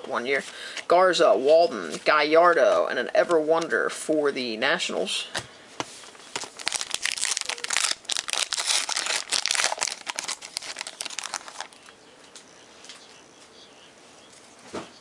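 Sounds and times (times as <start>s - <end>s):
wrapper crinkling and tearing: 6.3s - 11.9s.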